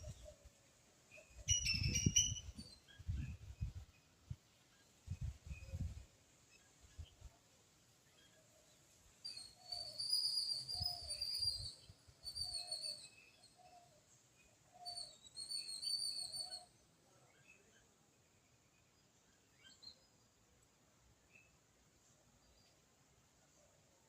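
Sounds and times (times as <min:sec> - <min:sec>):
high-pitched chirping calls: 0:01.2 - 0:03.1, 0:14.8 - 0:16.7.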